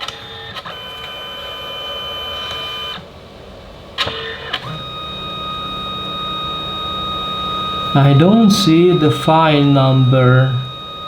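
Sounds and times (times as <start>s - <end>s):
printer motor whine: 0.0s - 3.1s, 3.9s - 11.0s.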